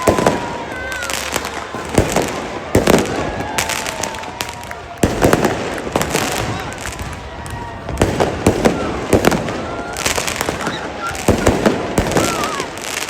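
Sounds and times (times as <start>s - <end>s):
big firework bangs: 0.0s - 13.0s
fireworks popping and crackling: 0.0s - 13.0s.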